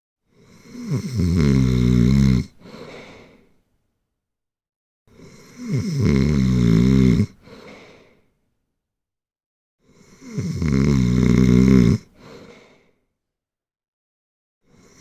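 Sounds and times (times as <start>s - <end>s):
loud snoring: 0.3s - 2.7s, 5.1s - 7.7s, 9.8s - 12.4s, 14.7s - 15.0s.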